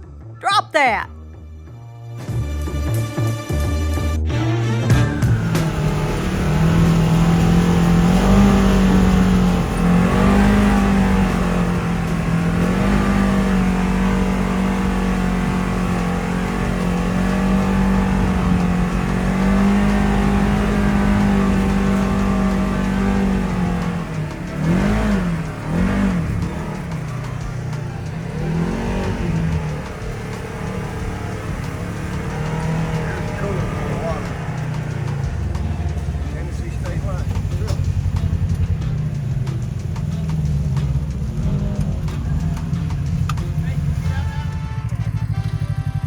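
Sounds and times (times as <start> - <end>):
atv engine revving: 4.9 - 46.0.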